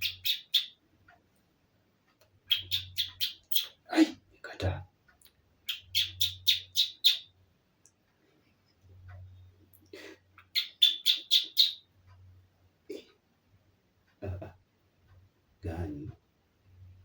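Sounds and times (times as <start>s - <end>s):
person making bird-like chirps: 2.5s - 4.2s.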